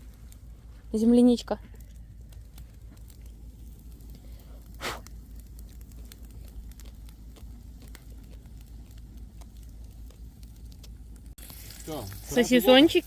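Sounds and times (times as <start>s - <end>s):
campfire crackling: 0.0s - 13.0s.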